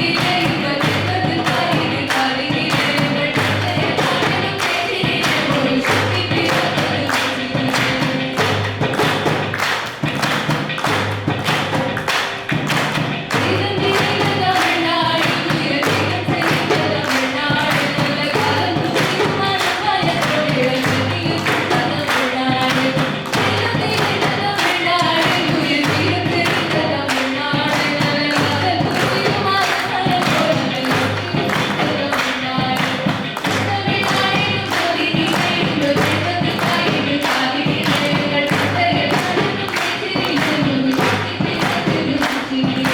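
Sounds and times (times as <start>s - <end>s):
person singing: 0.0s - 9.1s, 13.2s - 42.9s
percussion beat: 0.0s - 42.9s.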